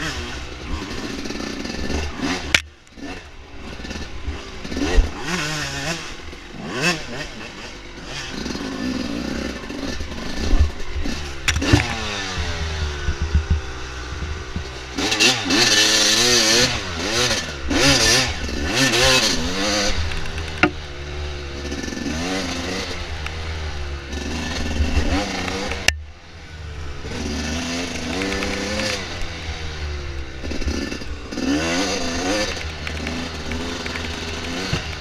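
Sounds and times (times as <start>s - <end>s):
dirt bike engine revving: 0.0s - 35.0s
bike knocks and clatter: 11.4s - 14.8s.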